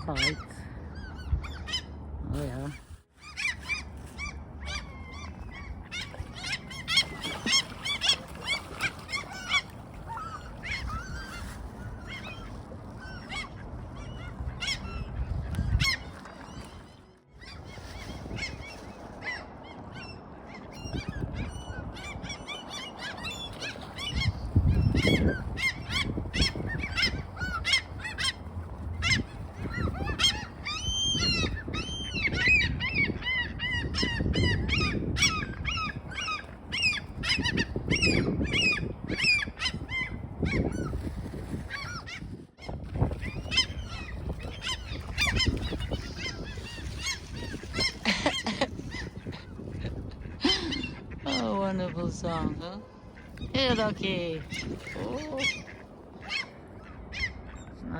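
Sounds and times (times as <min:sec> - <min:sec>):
low rumbling background: 0:00.0 - 0:41.0
gulls squawking: 0:00.0 - 0:57.9.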